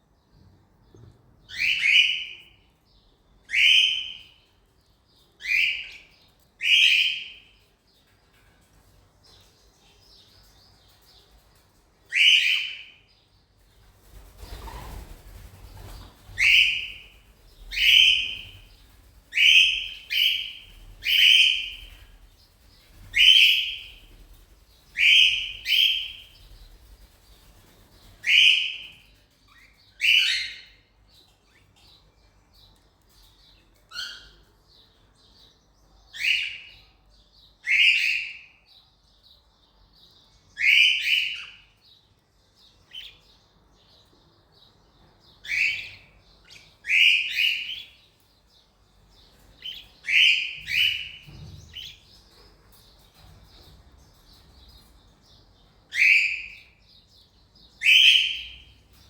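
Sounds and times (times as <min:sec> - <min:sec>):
cockatiel whistled calls: 0:57.8 - 0:58.6.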